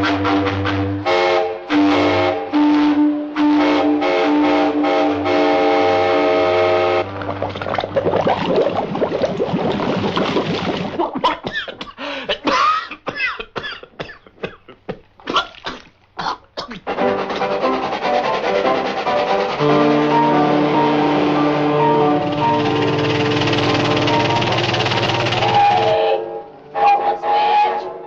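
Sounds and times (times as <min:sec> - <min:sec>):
train whistle blasts: 0:00.0 - 0:07.1, 0:19.6 - 0:28.0.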